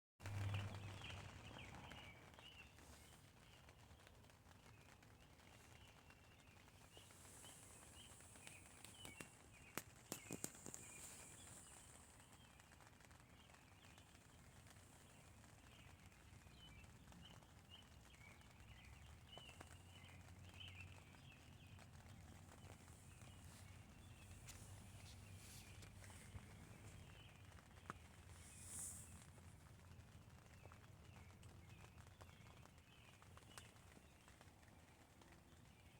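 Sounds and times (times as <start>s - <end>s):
light rain on a tent: 0.2s - 35.9s.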